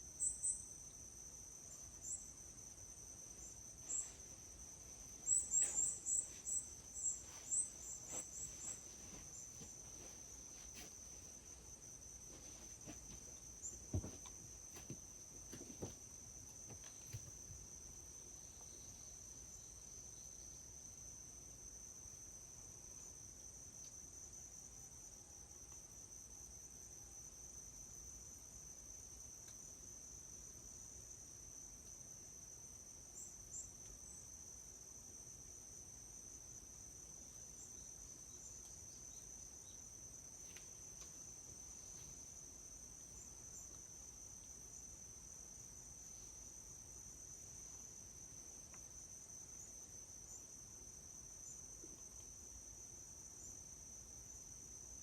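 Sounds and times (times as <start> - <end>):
crickets trilling: 0.0 - 55.0
soft knocks: 13.9 - 16.0.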